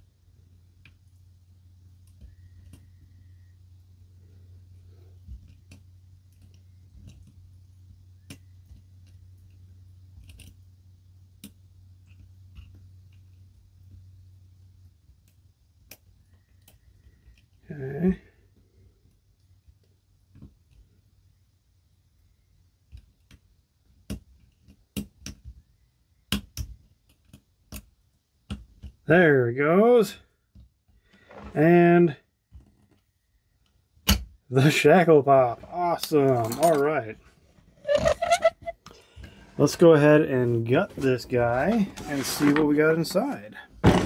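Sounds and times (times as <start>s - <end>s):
steady low hum: 0.0s - 22.8s
lock pick clicking and scraping: 10.2s - 10.6s, 37.8s - 39.0s.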